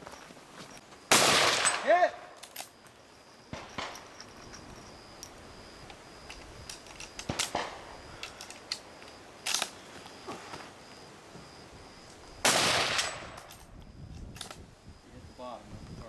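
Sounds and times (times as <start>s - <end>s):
rifle shots: 1.1s - 2.0s, 7.2s - 7.8s, 12.4s - 13.4s.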